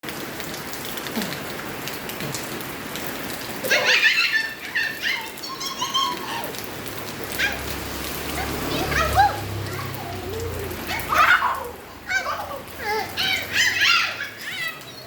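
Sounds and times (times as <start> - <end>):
rain pattering on surfaces: 0.0 - 15.0
high-pitched cries: 3.7 - 6.6, 10.3 - 15.0.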